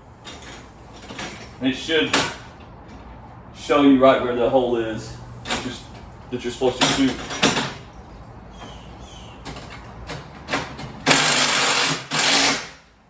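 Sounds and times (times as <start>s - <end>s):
power driver driving screws: 11.0s - 12.8s.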